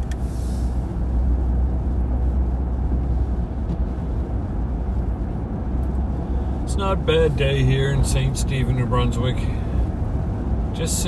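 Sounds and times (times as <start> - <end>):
car engine and tyre rumble: 0.0 - 11.0
short hiss: 0.1 - 0.8.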